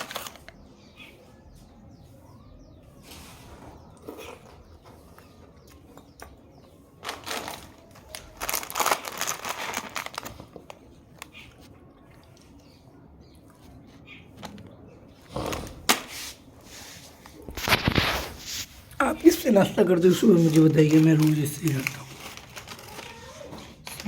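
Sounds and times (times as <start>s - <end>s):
snacks crunching and rustling: 3.9s - 14.8s, 19.9s - 24.0s.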